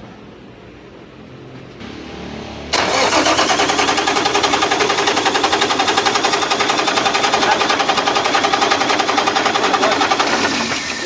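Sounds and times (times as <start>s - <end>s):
diesel engine cranking and running: 2.2s - 11.0s.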